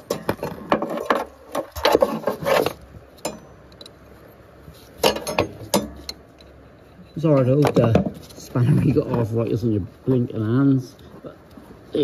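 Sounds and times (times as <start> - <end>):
spanner knocking on metal nut: 5.0 - 6.2.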